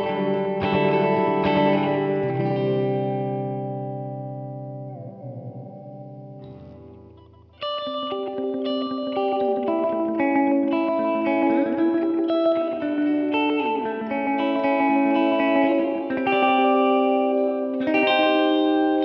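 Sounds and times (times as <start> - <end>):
electric guitar chord: 0.0 - 19.0
electric guitar with delay: 0.0 - 19.0.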